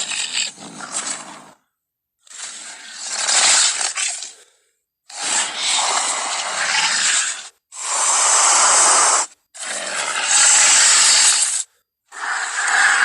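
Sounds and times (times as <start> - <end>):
harsh dinosaur roars: 12.1 - 13.0.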